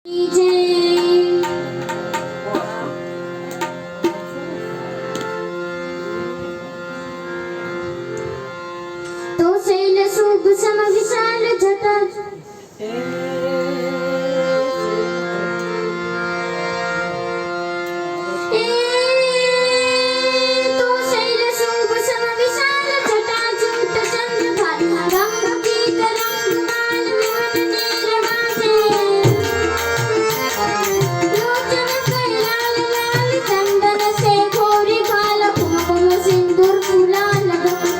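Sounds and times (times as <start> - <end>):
tabla: 0.1 - 6.8, 19.8 - 37.9
held accompanying notes: 0.1 - 11.5, 12.2 - 37.9
person singing: 12.8 - 16.6.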